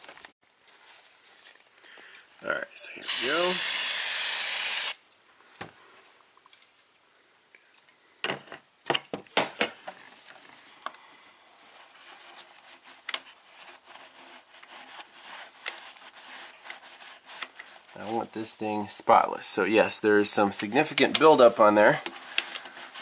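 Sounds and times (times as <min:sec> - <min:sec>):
aerosol spray hissing: 0:02.9 - 0:05.0.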